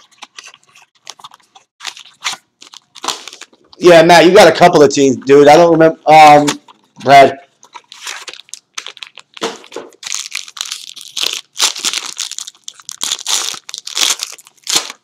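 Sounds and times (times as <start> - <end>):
foil wrapping crinkling and tearing: 0.0 - 3.7, 7.6 - 15.0.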